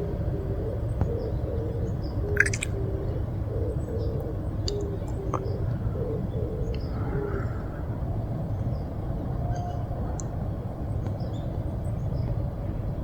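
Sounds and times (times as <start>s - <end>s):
small bird chirp: 2.3s - 2.8s
dove cooing: 2.3s - 4.3s.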